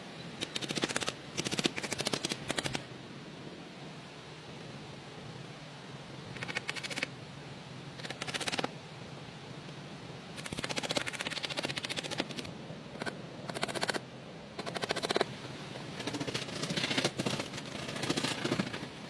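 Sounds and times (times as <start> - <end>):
rapid clicking or rasping: 0.4 - 2.8, 6.3 - 7.1, 8.0 - 8.7, 10.4 - 14.0, 14.6 - 15.3, 16.0 - 18.9.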